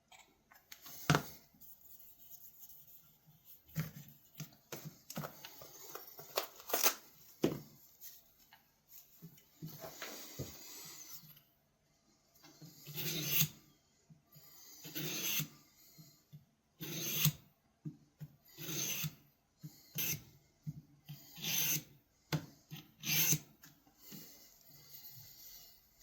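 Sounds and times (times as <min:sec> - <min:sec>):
knife blade rasping on sharpener: 0:12.8 - 0:13.6, 0:14.8 - 0:15.5, 0:16.8 - 0:17.4, 0:21.3 - 0:21.9, 0:23.0 - 0:23.5.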